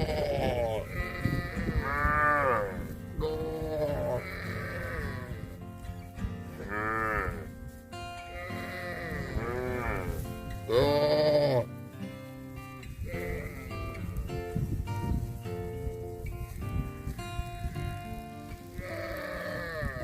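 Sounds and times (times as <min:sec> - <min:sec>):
calf mooing: 0:00.0 - 0:05.5, 0:06.5 - 0:07.5, 0:08.3 - 0:11.7, 0:18.8 - 0:20.0.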